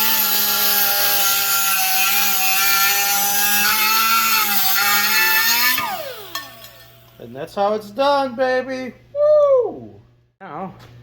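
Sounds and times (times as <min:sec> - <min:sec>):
cut-off tool cutting sheet steel: 0:00.0 - 0:07.1.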